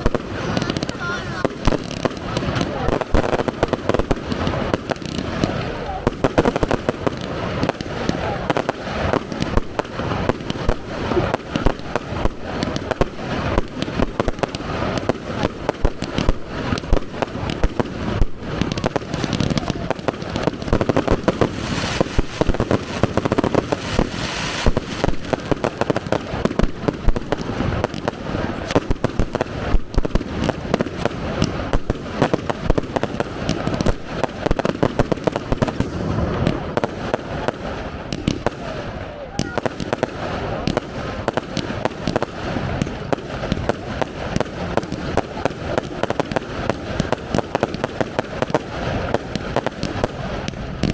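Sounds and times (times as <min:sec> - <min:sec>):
fireworks crackling: 0:00.0 - 0:50.9
fireworks shells bursting: 0:15.7 - 0:27.9.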